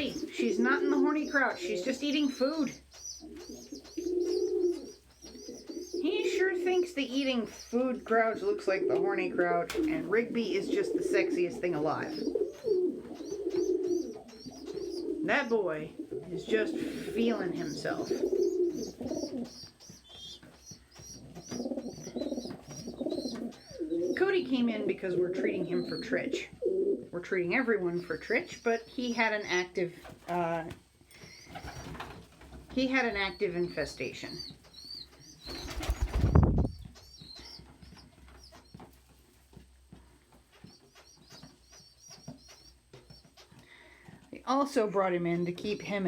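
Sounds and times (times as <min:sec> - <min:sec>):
pigeons cooing: 0:00.0 - 0:27.1.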